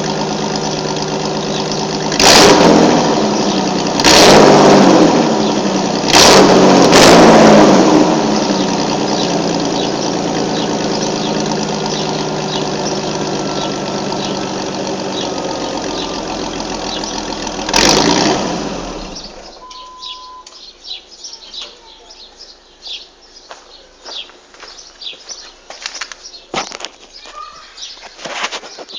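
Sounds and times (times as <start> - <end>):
engine revving: 0.0 - 20.4
engine idling: 0.0 - 20.9
faint chirps: 19.4 - 24.0.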